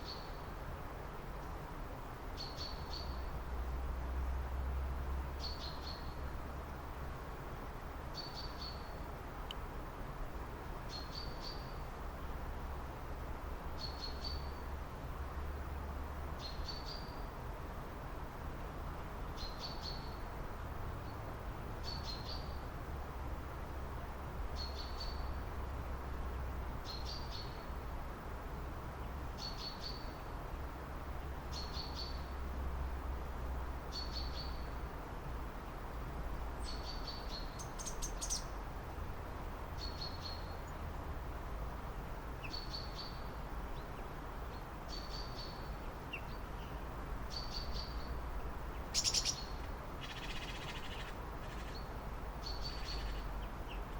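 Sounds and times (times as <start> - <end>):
bird chirping: 8.1 - 9.0, 21.8 - 22.6, 24.6 - 25.4, 31.5 - 32.3, 33.9 - 34.8, 36.6 - 38.6, 39.8 - 40.8, 42.4 - 53.9.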